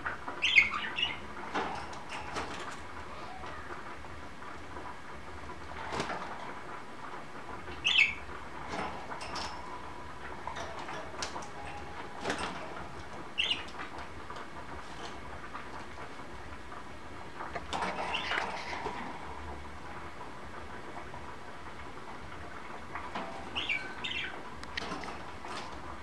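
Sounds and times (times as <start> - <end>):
budgerigars chirping: 0.4 - 1.2, 7.8 - 8.2, 13.4 - 13.7, 23.6 - 24.4
birds splashing and fluttering: 5.8 - 6.5.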